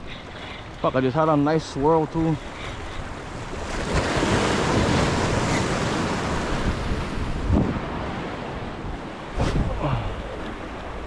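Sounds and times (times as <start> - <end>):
ocean waves on shore: 0.0 - 11.0
wind buffeting microphone: 3.0 - 11.0.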